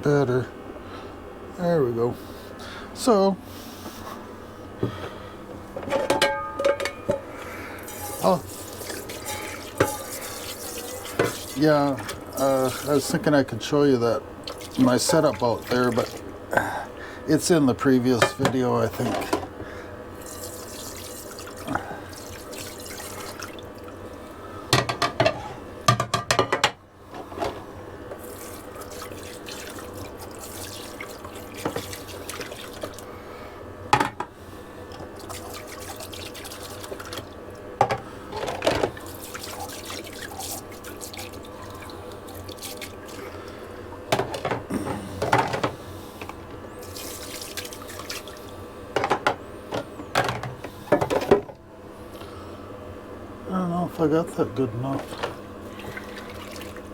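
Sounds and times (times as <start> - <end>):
dishes clunking and clattering: 5.7 - 7.3, 9.0 - 10.2, 18.2 - 19.5, 24.7 - 27.6, 33.9 - 34.3, 37.8 - 39.0, 44.1 - 45.8, 48.9 - 51.6
water spraying onto dishes: 7.8 - 16.7, 20.2 - 24.0, 28.2 - 33.1, 35.2 - 37.3, 38.9 - 43.5, 46.8 - 48.5.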